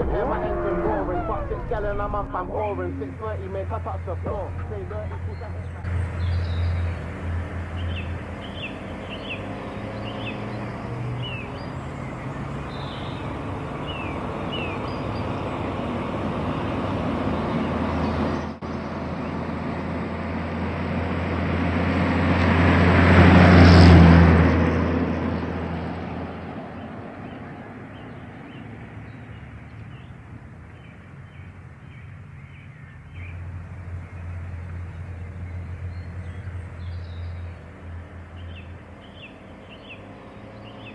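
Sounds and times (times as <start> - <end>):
low steady hum: 0.0 - 9.0
birds chirping: 0.0 - 19.5, 25.3 - 40.9
vehicle passing by: 0.0 - 40.9.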